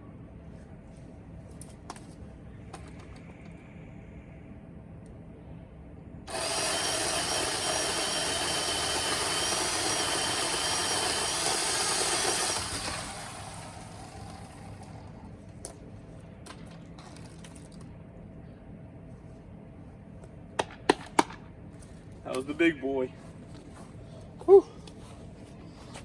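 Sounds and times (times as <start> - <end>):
electric chainsaw cutting wood: 6.3 - 15.3.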